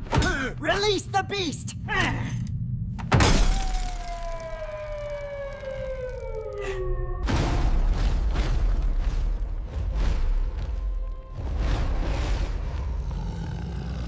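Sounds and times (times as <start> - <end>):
whine sliding down in pitch: 3.7 - 7.3.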